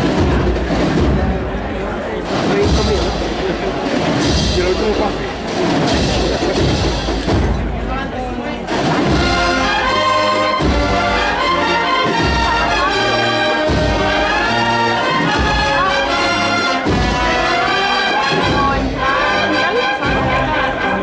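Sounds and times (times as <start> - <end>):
steady drum beat: 0.0 - 21.0
brass melody: 8.7 - 21.0.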